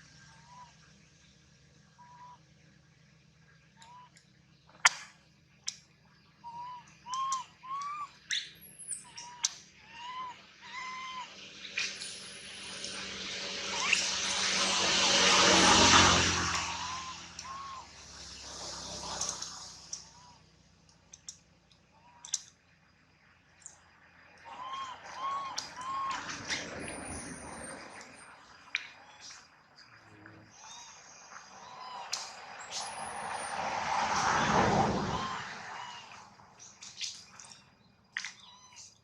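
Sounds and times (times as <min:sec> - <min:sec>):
short arched chirping calls: 0:05.6 - 0:13.1, 0:30.5 - 0:33.6, 0:35.1 - 0:39.0
sharp clicks: 0:20.8 - 0:22.6.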